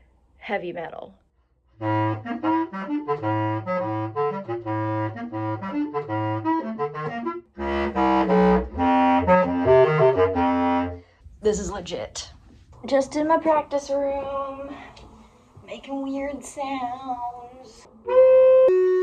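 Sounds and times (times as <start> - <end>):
bass clarinet playing low notes: 1.7 - 11.2, 17.9 - 19.0.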